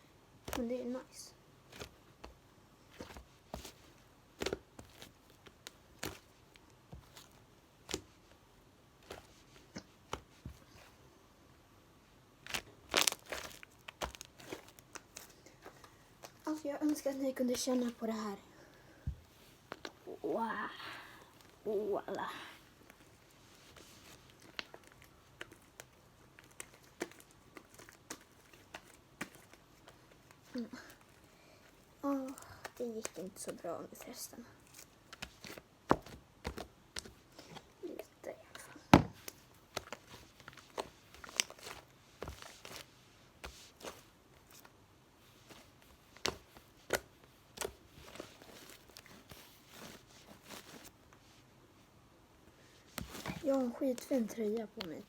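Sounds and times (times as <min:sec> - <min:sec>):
slime squeezed and stretched: 0:12.4 - 0:14.8.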